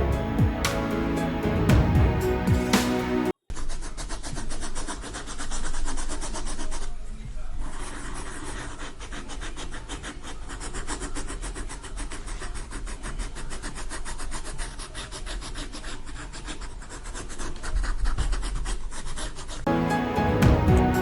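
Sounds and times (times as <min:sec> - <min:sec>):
pencil rubbing on paper: 0:03.5 - 0:19.7.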